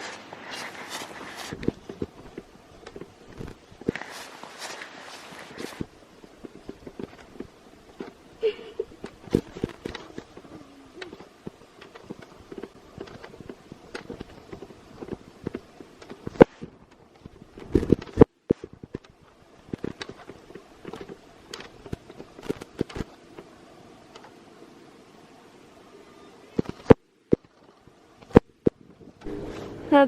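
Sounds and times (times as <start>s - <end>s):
footsteps in snow: 0.0s - 8.0s.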